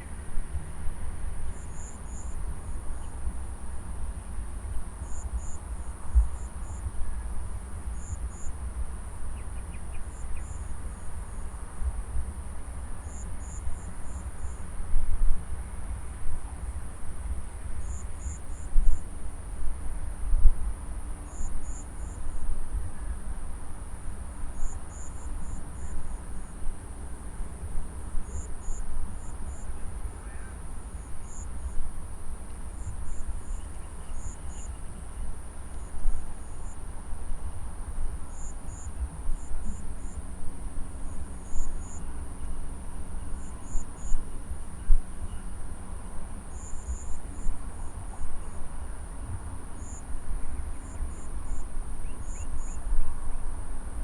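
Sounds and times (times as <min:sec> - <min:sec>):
crickets chirping: 0:00.0 - 0:54.0
insects trilling: 0:01.5 - 0:02.3, 0:28.3 - 0:31.8, 0:32.8 - 0:35.2, 0:38.3 - 0:38.9, 0:41.2 - 0:45.5, 0:46.5 - 0:49.2, 0:49.8 - 0:53.0.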